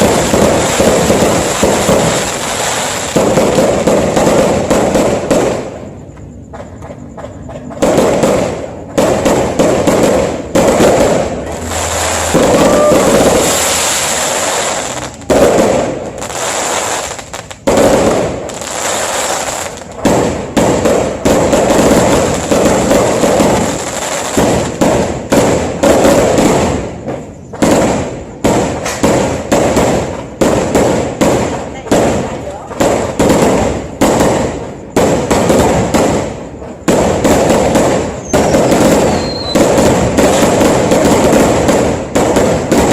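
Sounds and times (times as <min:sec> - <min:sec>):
fireworks bangs and crackles: 0:00.0 - 0:42.9.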